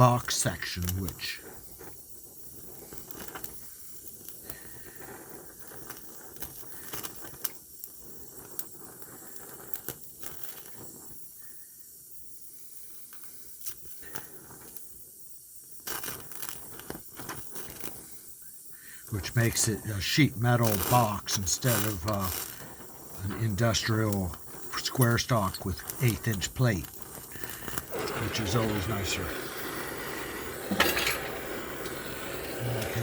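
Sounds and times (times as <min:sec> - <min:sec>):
welding arc crackling and hissing: 0:00.0 - 0:33.0
sharp welding pops: 0:15.7 - 0:18.2, 0:18.9 - 0:29.3.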